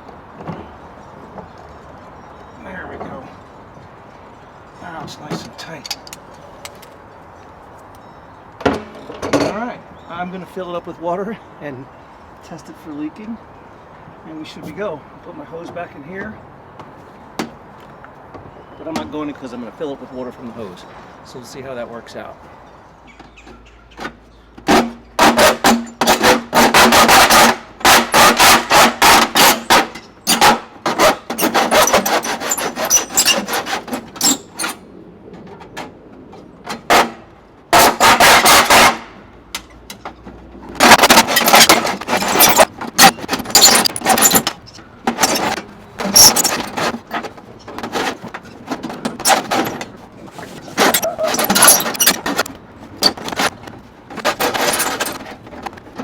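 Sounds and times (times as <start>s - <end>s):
hand saw cutting metal downspout: 24.7s - 34.8s, 37.8s - 39.1s, 40.8s - 55.4s.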